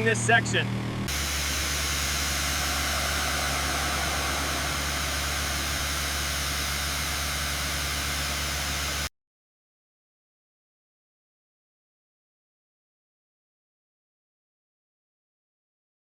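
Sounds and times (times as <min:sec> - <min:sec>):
low machinery hum: 0:01.0 - 0:09.1
steady hiss: 0:01.1 - 0:09.1.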